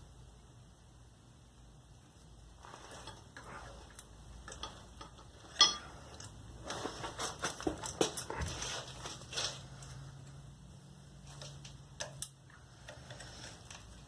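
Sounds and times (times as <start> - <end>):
metal parts and tools clinking: 2.9 - 9.9.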